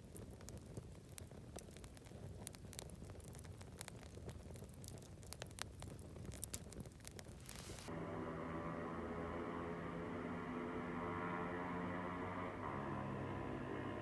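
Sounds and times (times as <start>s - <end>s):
campfire crackling and popping: 0.0s - 7.9s.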